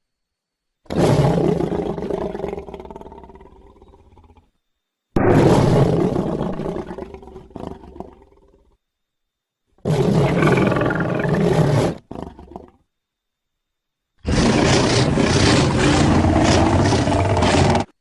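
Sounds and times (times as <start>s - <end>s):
dinosaur roaring: 0.9s - 4.4s, 5.2s - 8.7s, 9.8s - 12.8s, 14.2s - 18.0s
dinosaur growl: 0.9s - 4.5s, 5.2s - 8.8s, 9.8s - 12.8s, 14.2s - 18.0s.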